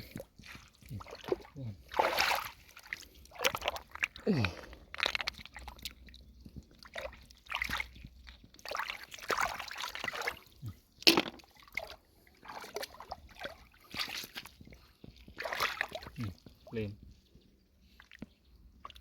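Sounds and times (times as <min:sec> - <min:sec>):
water sloshing and splashing: 0:00.0 - 0:19.0.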